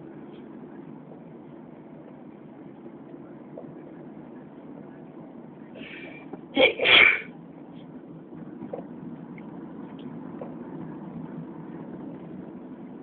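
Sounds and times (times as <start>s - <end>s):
steady low hum: 0.0s - 13.0s
person sneezing loudly: 6.6s - 7.3s.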